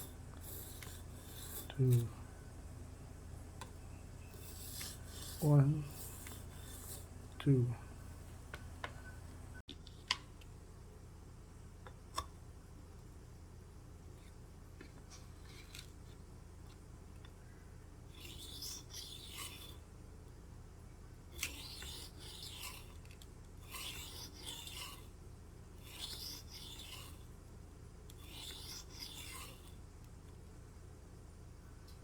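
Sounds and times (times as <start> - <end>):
blade scraping on whetstone: 0.0 - 2.1, 4.2 - 7.1, 18.2 - 19.8, 21.4 - 25.1, 25.8 - 27.2, 28.2 - 29.7.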